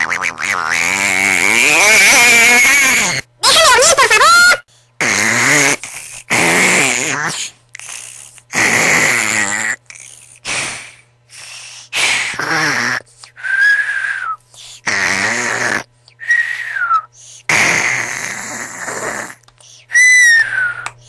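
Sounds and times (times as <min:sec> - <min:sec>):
person snoring: 0:05.0 - 0:13.1, 0:14.8 - 0:15.9, 0:17.4 - 0:19.4
held whistling tone: 0:13.4 - 0:14.4, 0:16.2 - 0:17.1, 0:19.9 - 0:21.0.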